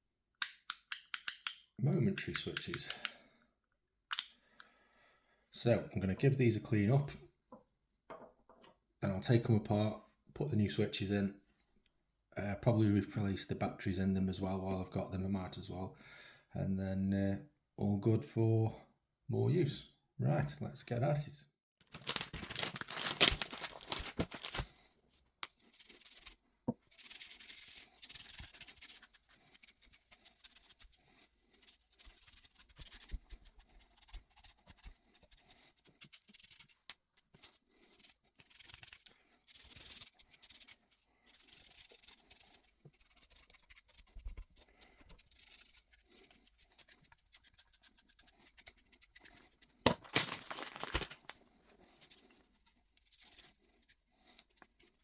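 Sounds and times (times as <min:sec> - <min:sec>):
scrubbing a remote: 0:25.4 - 0:49.8.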